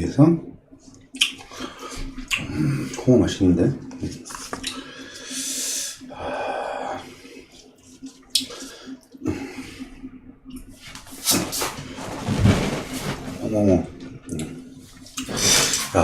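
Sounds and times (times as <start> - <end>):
wet mouth clicks: 1.0 - 1.6, 2.3 - 2.5, 4.3 - 4.8, 8.2 - 9.2
person chewing: 1.0 - 2.5, 4.3 - 4.8, 7.5 - 9.2.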